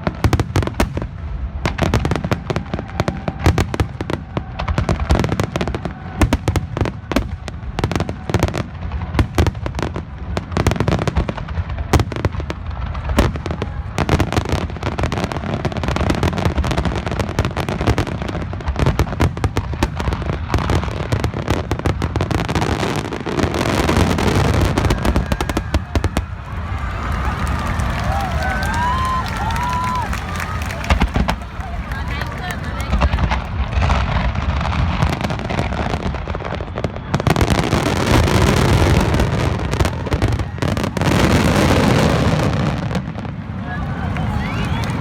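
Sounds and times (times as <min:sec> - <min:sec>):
fireworks booming and crackling: 0:00.0 - 0:45.0.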